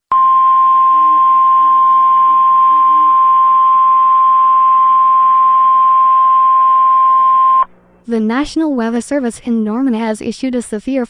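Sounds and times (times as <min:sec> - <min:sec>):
steady alarm beep: 0:00.1 - 0:07.7.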